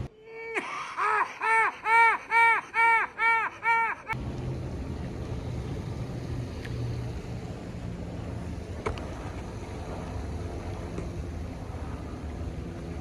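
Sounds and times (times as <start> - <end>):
low rumble with hiss: 4.1 - 13.0.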